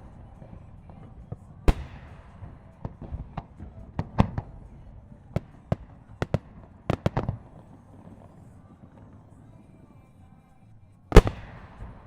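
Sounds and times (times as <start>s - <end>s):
firework shells bursting: 0.0s - 8.2s, 11.2s - 12.0s.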